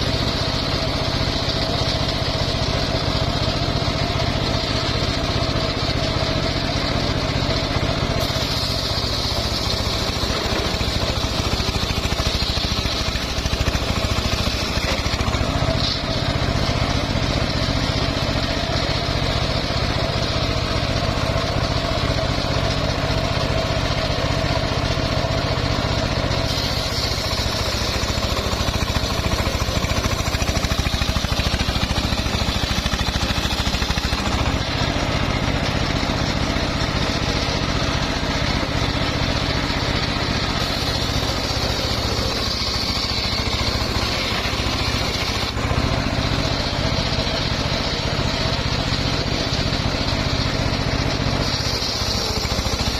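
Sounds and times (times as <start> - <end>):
sawmill engine running: 0.0 - 52.9
saw blade hissing through wood: 8.2 - 17.7, 26.4 - 34.9, 40.4 - 45.7, 51.2 - 52.9.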